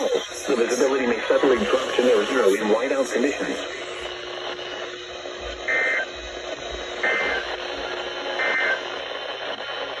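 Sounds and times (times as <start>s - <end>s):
radio hiss: 0.0s - 10.0s
shrill digital squawks: 5.7s - 6.1s, 7.0s - 7.4s.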